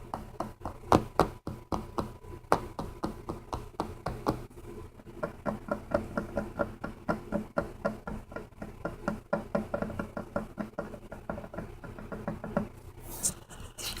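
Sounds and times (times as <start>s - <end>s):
rapid tapping on hard object: 0.0s - 4.5s, 5.2s - 12.8s.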